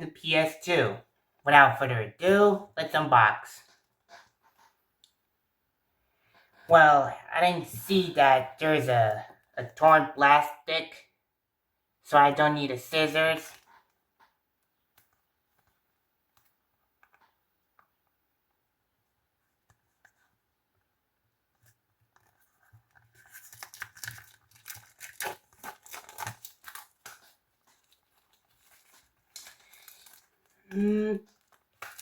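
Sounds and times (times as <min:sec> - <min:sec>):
plastic shrink-wrap tearing: 0:23.0 - 0:32.0.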